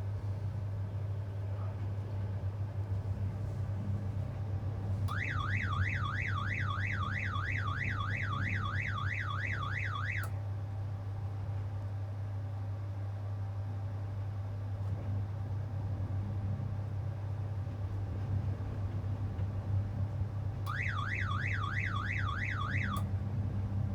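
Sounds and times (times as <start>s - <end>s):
crane engine hum: 0.0s - 11.4s, 20.4s - 23.9s
warbling wind alarm: 5.1s - 10.3s, 20.7s - 23.1s.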